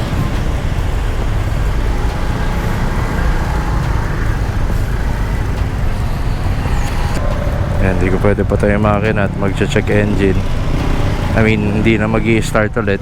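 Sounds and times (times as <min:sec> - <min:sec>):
scooter engine running: 0:00.0 - 0:13.0
wet road noise: 0:00.0 - 0:13.0
wind: 0:00.0 - 0:13.0.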